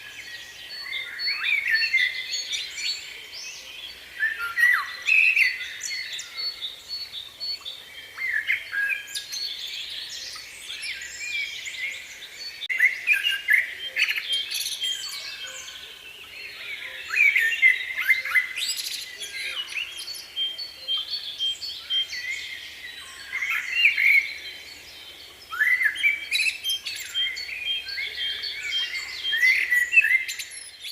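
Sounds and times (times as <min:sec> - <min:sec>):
songbirds chirping and singing: 0:00.0 - 0:30.9.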